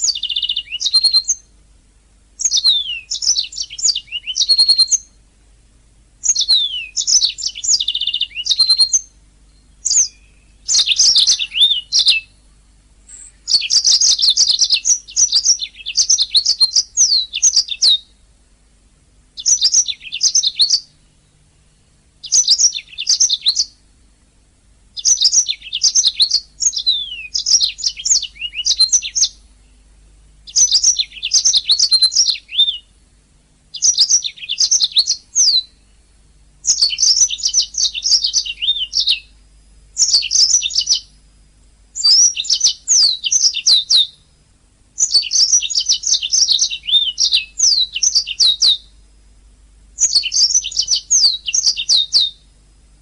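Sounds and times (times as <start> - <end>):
canary singing: 0.0 - 1.6, 2.4 - 5.2, 6.2 - 18.2, 19.3 - 24.2, 25.0 - 33.1, 33.7 - 39.4, 40.0 - 41.2, 41.9 - 44.4, 45.0 - 49.0, 50.0 - 52.6.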